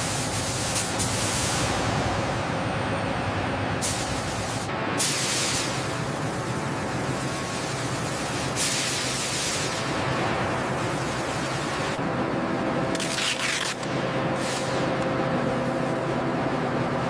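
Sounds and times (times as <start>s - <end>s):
hissing spray: 0.0s - 6.4s
low rumble: 0.9s - 4.7s.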